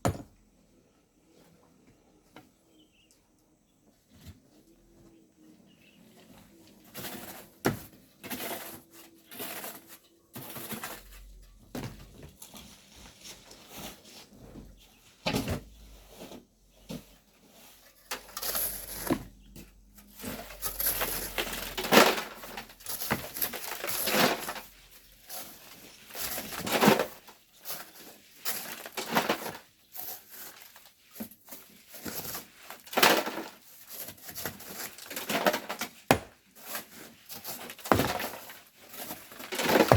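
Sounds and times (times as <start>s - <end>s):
hand tools scraping sand and stones: 6.7s - 11.3s, 36.5s - 39.9s.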